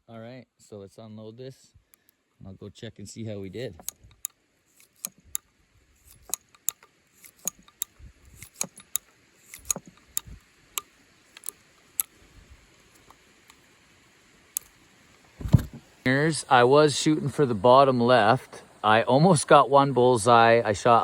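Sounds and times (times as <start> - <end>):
revolver metallic clicks: 3.6 - 13.7, 14.4 - 15.3.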